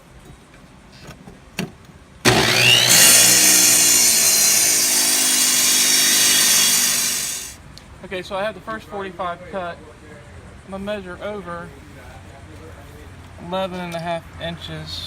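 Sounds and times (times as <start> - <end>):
masonry saw cutting stone: 2.3 - 7.6.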